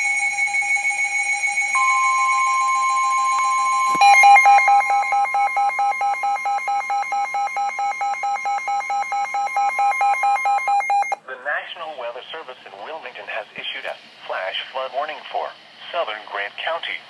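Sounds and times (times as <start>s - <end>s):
continuous warning alarm tone: 0.0s - 11.2s
rapid pulsing beeps: 0.0s - 11.2s.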